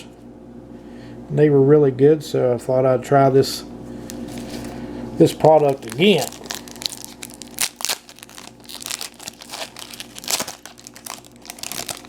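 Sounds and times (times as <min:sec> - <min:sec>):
plastic and foil packaging crinkling: 0:04.0 - 0:12.0.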